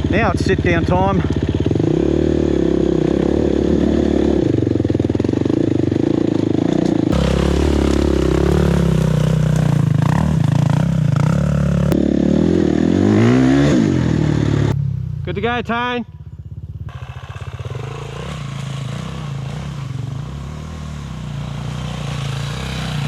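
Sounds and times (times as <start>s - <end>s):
dirt bike engines revving: 0.0s - 23.0s.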